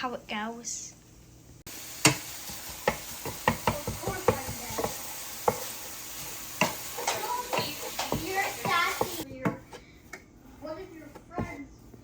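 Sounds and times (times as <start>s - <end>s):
food sizzling in a frying pan: 0.0s - 9.3s
utensil knocking and scraping pan: 2.0s - 12.0s.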